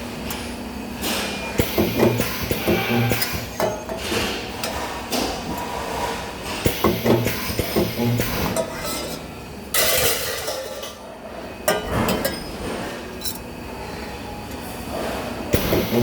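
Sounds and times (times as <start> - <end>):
metal parts clinking: 13.2 - 13.4
spot welder hiss: 15.5 - 16.0.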